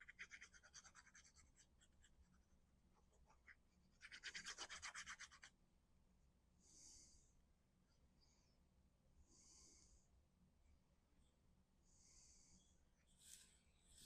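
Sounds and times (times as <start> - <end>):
scratchy rubbing on paper: 0.0 - 5.5.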